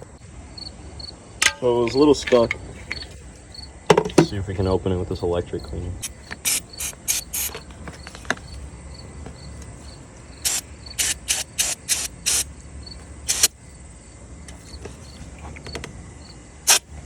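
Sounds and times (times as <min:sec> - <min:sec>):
crickets chirping: 0:00.0 - 0:17.0
aerosol spray hisses: 0:06.0 - 0:07.6, 0:10.4 - 0:12.5, 0:13.3 - 0:13.5, 0:16.7 - 0:16.9.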